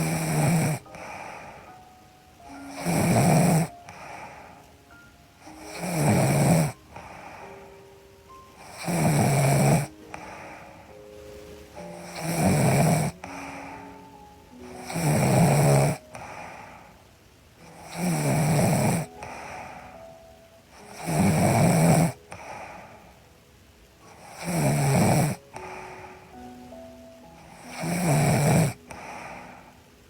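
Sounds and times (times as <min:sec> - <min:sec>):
woman snoring: 0:00.0 - 0:01.7, 0:02.6 - 0:04.6, 0:05.4 - 0:07.6, 0:08.6 - 0:10.8, 0:11.8 - 0:13.9, 0:14.7 - 0:16.9, 0:17.7 - 0:19.8, 0:20.8 - 0:22.9, 0:24.0 - 0:26.4, 0:27.4 - 0:29.8
quiet breathing: 0:00.0 - 0:30.0
soft background music: 0:00.0 - 0:30.0.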